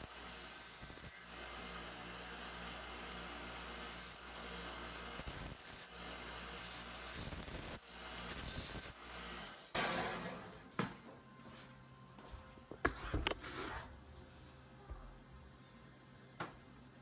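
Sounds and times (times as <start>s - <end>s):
belt sander grinding wire: 0.0s - 10.1s.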